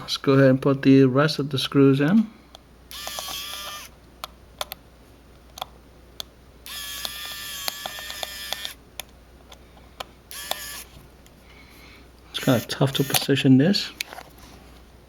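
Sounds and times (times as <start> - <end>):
clicks of bit and screws: 2.9 - 3.9, 6.7 - 9.1, 10.3 - 10.9, 12.4 - 13.3
electric screwdriver motor whine: 2.9 - 3.9, 6.7 - 8.8, 10.3 - 10.9, 12.4 - 13.3.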